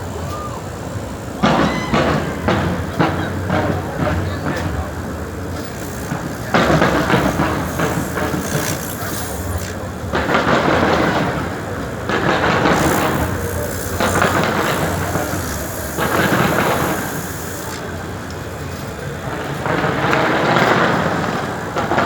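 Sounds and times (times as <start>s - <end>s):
fireworks crackling: 4.5s - 18.5s
sharp fireworks pops: 5.6s - 17.9s.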